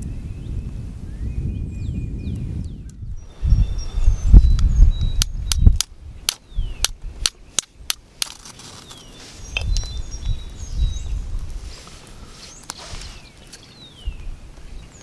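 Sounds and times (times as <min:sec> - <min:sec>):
wind gusting on microphone: 0:00.0 - 0:08.4, 0:09.0 - 0:15.0
small birds chirping: 0:00.0 - 0:15.0
sharp cracks: 0:04.6 - 0:09.0.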